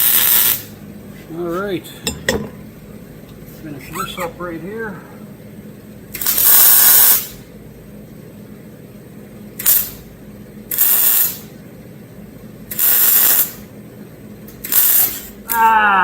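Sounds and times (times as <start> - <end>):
welding arc hiss: 0.0 - 1.4, 6.1 - 7.5, 9.6 - 11.6, 12.7 - 13.7, 14.5 - 15.8.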